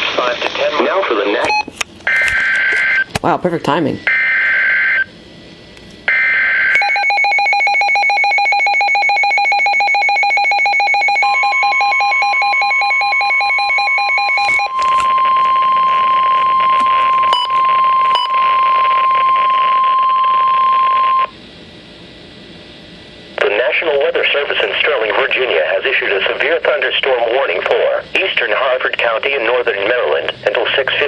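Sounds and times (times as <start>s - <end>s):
steady warning alarm tone: 4.0s - 5.1s, 6.1s - 21.4s.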